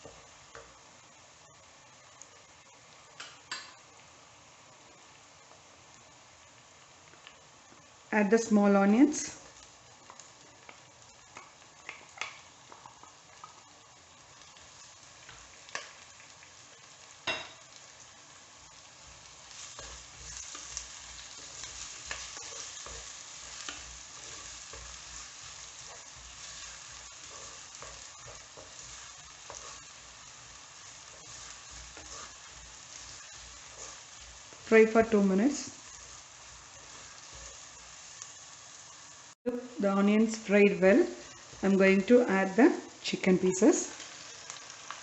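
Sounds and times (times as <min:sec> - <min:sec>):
onions sizzling in hot oil: 0:00.0 - 0:45.0.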